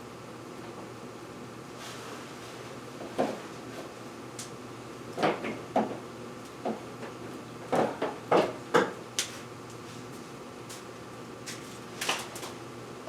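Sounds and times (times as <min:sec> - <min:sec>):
objects knocking and clunking: 0:07.7 - 0:08.9.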